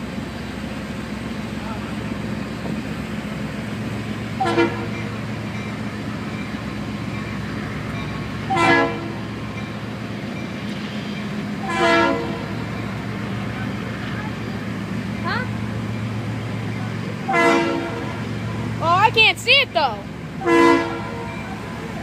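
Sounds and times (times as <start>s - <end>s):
locomotive air horn blasts: 4.4s - 5.0s, 8.5s - 9.2s, 11.6s - 12.5s, 17.3s - 18.2s, 20.4s - 21.3s.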